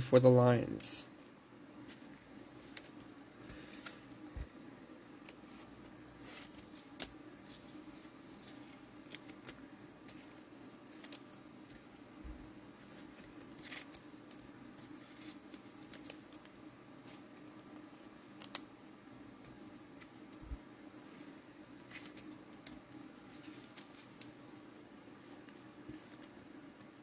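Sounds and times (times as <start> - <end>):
steady low hum: 0.0 - 27.0
trading cards clicking and rustling: 5.1 - 12.0, 12.6 - 18.8, 19.4 - 26.9.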